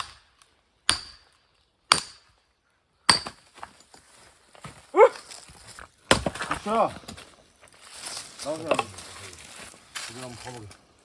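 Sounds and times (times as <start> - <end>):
short vocal cry: 4.9 - 5.2.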